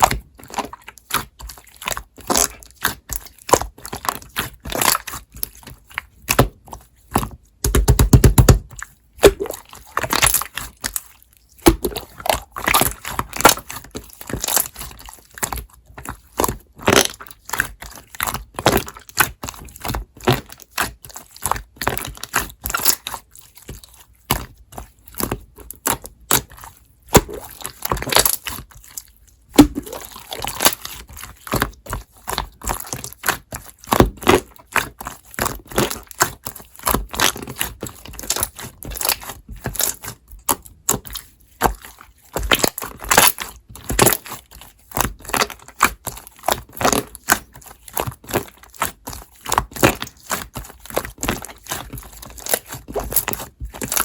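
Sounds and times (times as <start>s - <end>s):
slime squeezed by hand: 8.7s - 19.1s, 22.0s - 54.0s.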